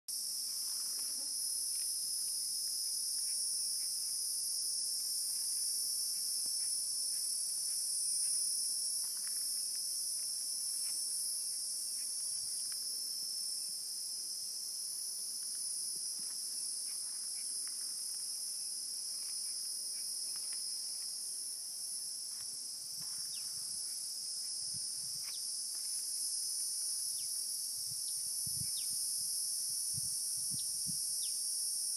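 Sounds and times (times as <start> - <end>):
insects shrilling chorus: 28.0 - 29.0.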